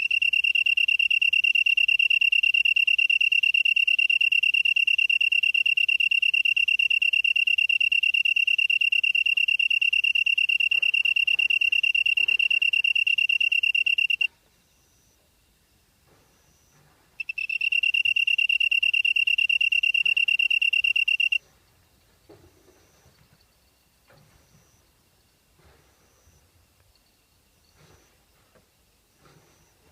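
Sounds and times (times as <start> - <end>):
insect high-pitched trill: 0.0 - 15.2, 16.6 - 21.4
distant insects chirping: 0.0 - 29.9.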